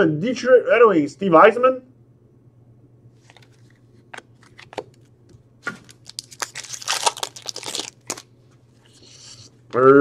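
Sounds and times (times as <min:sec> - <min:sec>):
foil wrapper crinkling and tearing: 0:05.8 - 0:08.3.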